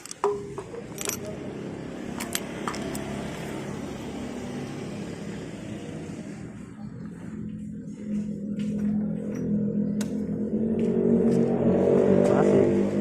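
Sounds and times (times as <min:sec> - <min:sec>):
metallic clicks and clinks: 0:00.0 - 0:01.4, 0:02.1 - 0:03.1
motorcycle engine running: 0:00.0 - 0:13.0.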